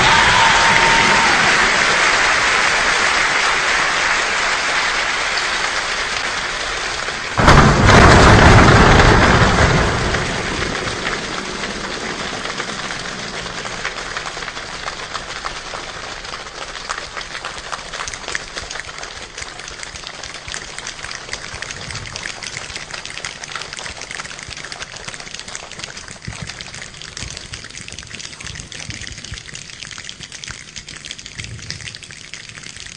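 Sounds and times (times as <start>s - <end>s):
heavy rain falling: 0.0s - 29.6s
raindrops ticking: 5.2s - 32.9s
thunderclap rumbling: 7.3s - 14.8s.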